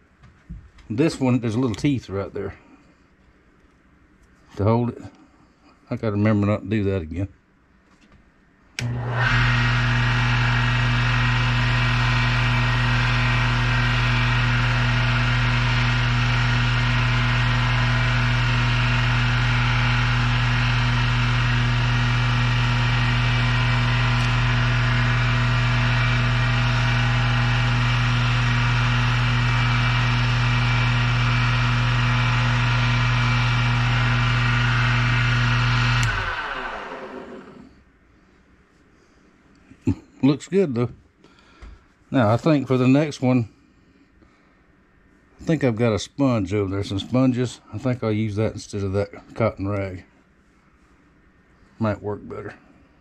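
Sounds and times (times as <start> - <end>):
tool motor humming: 8.8 - 37.8.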